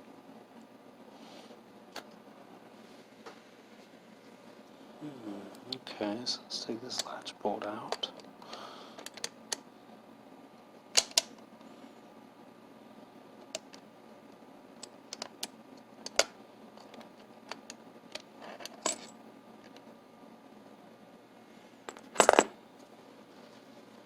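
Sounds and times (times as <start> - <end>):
lock parts clicking: 9.0 - 9.6, 11.0 - 11.3, 15.1 - 19.1.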